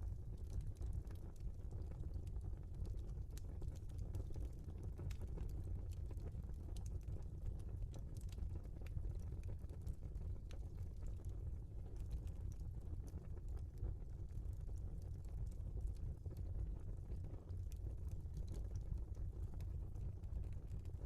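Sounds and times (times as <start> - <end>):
low rumble of flames: 0.0 - 21.0
wood fire crackling and popping: 0.0 - 21.0.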